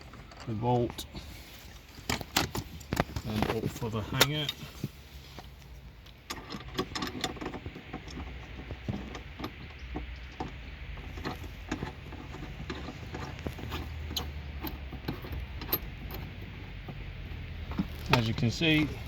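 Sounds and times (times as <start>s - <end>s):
seatbelt retractor clicking and rattling: 1.8s - 18.9s.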